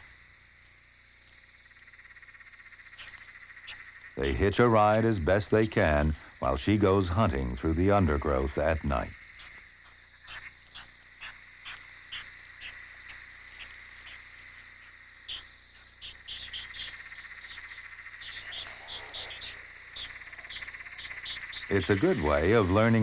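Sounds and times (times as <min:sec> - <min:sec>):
frogs and insects trilling: 0:00.0 - 0:23.0
short chirping calls: 0:09.4 - 0:23.0.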